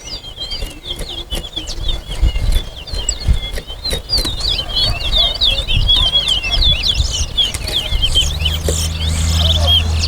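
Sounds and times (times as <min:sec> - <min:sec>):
finches singing high chirps: 0:00.0 - 0:10.0
low uneven rumble: 0:04.4 - 0:10.0.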